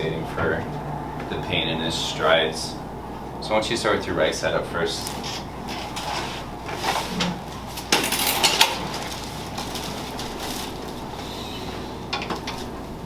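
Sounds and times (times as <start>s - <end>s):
rustling and creaking: 5.0s - 12.8s.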